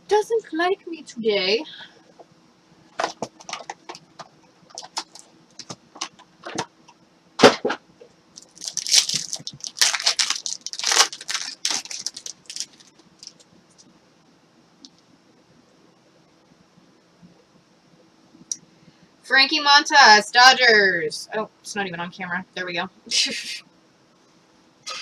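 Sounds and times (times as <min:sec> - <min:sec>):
packaging clicks: 0:08.4 - 0:13.4
packaging cracking: 0:08.4 - 0:13.5
packaging crinkling and tearing: 0:08.4 - 0:13.9.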